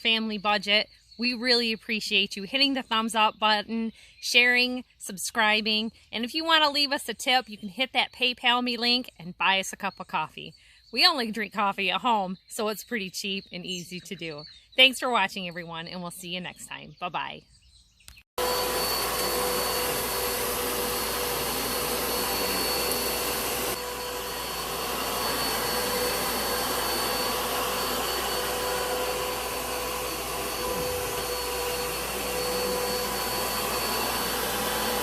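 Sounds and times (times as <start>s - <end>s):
vacuum cleaner motor whine: 18.4s - 35.0s.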